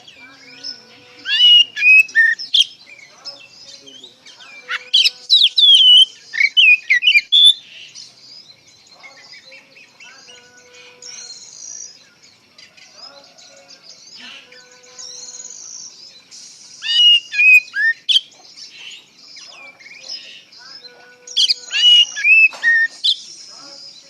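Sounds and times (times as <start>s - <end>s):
soft bird twittering: 0.0s - 24.0s
bird singing whistled phrases: 0.4s - 2.8s, 4.6s - 7.7s, 14.5s - 18.3s, 20.7s - 24.0s.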